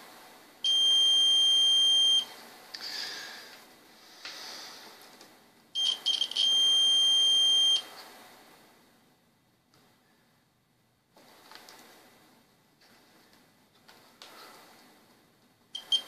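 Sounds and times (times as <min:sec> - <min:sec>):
multimeter continuity beeps: 0:00.6 - 0:02.3, 0:05.8 - 0:07.9, 0:15.8 - 0:16.0.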